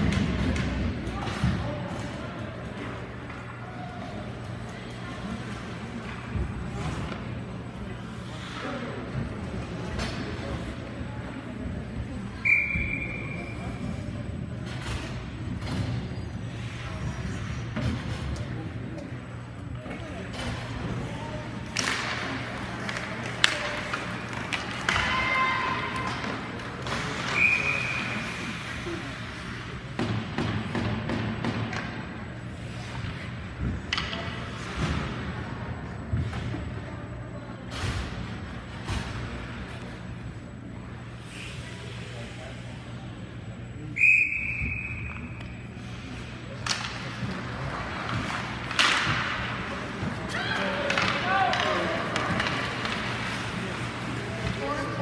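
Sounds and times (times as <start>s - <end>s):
referee's whistle: 12.4s - 13.6s, 27.3s - 28.2s, 43.9s - 45.4s.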